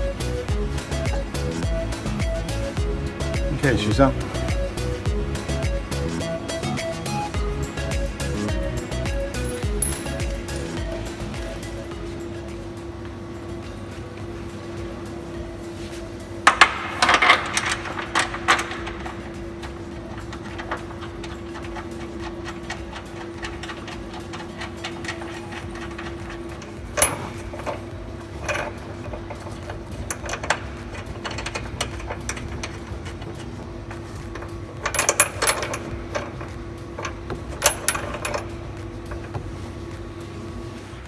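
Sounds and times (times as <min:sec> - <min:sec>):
machine hum: 0:00.0 - 0:41.0
metallic clicks and knocks: 0:16.4 - 0:39.4.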